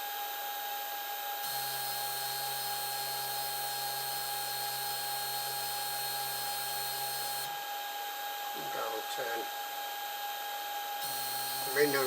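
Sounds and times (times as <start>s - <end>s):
stepper motors humming: 11.0s - 12.0s.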